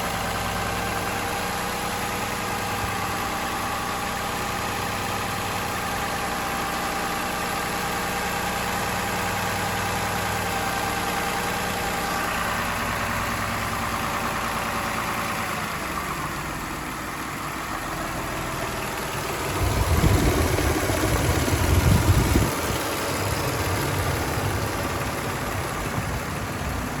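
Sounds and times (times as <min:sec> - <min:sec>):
engine idling with rattling knock: 0:00.0 - 0:27.0
loud low rumbling bursts: 0:19.4 - 0:27.0.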